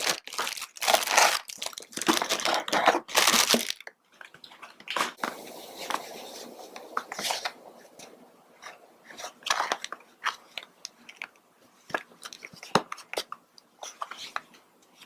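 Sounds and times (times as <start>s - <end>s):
packaging crinkling: 0.0s - 3.9s.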